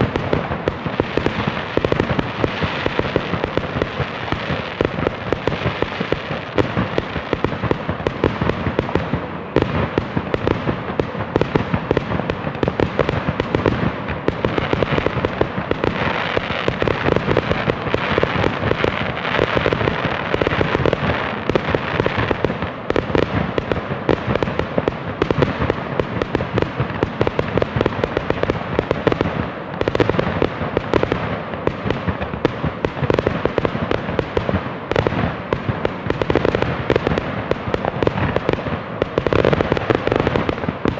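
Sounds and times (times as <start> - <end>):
fireworks crackling pops: 0.0 - 40.9.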